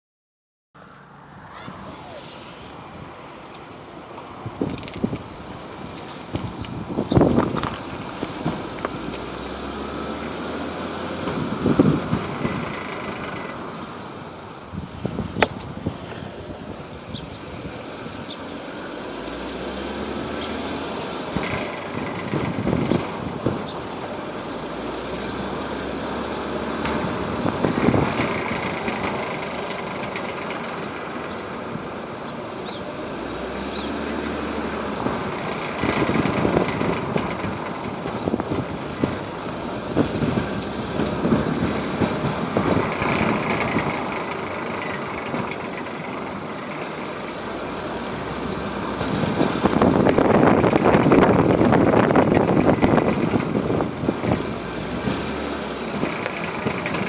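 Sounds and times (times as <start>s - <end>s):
car road and engine noise: 0.8s - 57.0s
irregular rattle: 26.2s - 32.8s, 35.0s - 47.4s.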